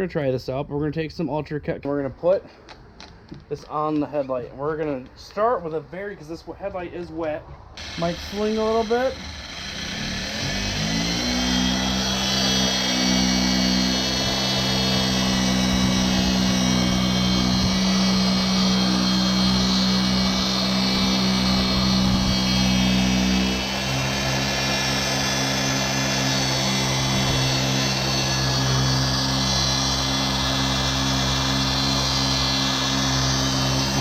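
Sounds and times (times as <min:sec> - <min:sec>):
electric polisher whining: 0:07.8 - 0:34.0.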